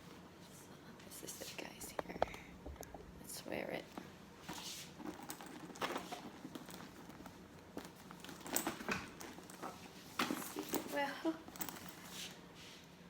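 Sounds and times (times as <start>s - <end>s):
backpack rustling against clothing: 4.4s - 12.5s.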